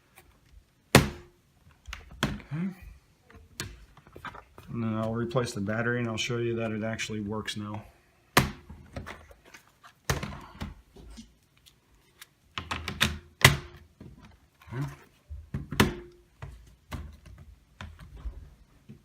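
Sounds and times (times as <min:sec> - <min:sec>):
plastic knocks of laptop handling: 0:10.0 - 0:10.8.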